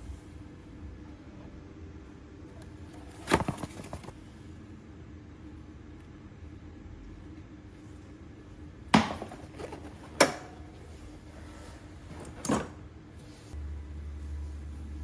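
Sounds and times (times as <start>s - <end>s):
low steady hum: 0.0s - 15.0s
sharp knocks of hard objects: 9.0s - 9.5s.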